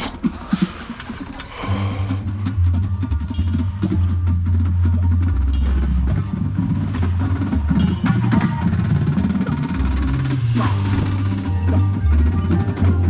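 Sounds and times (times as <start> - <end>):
brass horns: 0.0 - 13.0
sharp drum strikes: 1.6 - 13.0.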